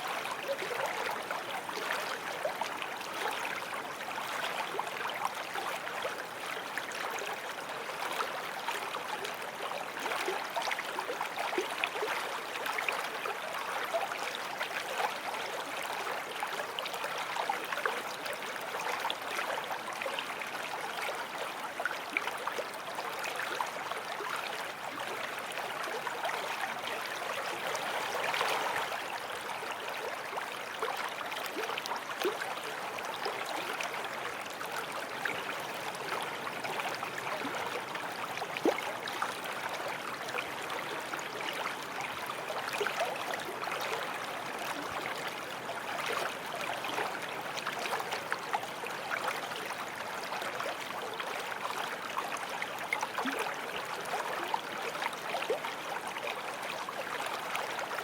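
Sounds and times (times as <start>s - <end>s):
stream flowing over stones: 0.0s - 58.0s.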